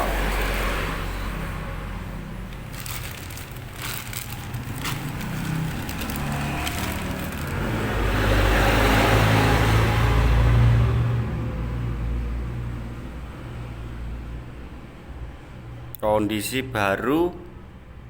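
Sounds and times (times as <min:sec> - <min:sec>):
steady rumbling noise: 0:00.0 - 0:08.3
sharp clicks and crackles: 0:02.5 - 0:07.7.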